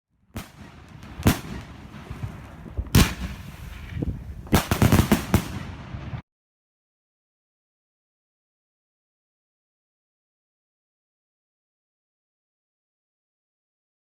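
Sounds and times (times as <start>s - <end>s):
fast volley of firework shots: 0.4s - 6.2s
fireworks bangs: 0.4s - 6.2s
fireworks hiss: 1.0s - 5.7s.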